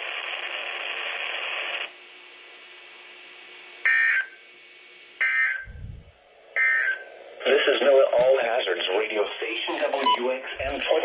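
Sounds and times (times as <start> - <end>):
faint radio hiss: 5.7 - 11.0.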